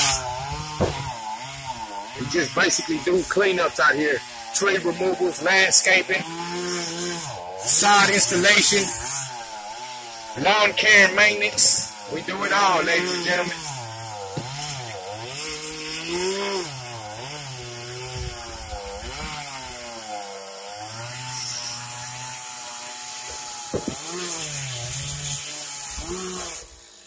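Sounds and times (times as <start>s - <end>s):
chainsaw cutting wood: 0.0s - 27.0s.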